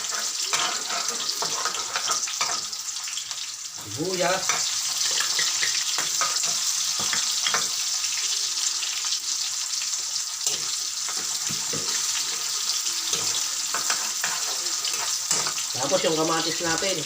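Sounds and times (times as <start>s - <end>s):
food sizzling in hot oil: 0.0s - 17.0s
spatula clicking and tapping: 4.5s - 7.8s.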